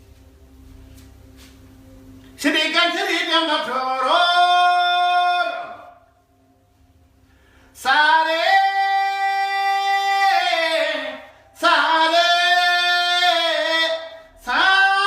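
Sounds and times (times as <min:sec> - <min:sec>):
solo voice singing held notes: 0:07.8 - 0:15.0.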